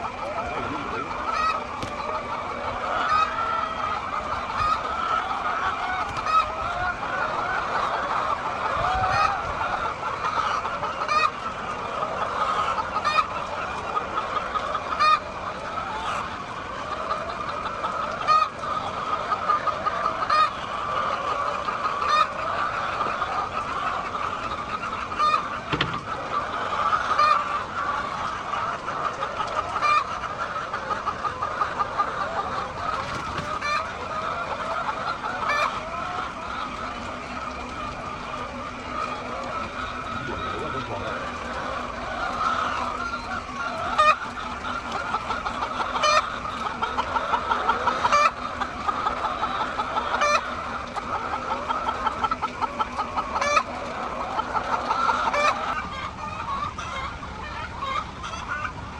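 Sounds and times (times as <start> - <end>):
sharp hen calls: 0.0 - 11.3
hens clucking: 0.0 - 58.9.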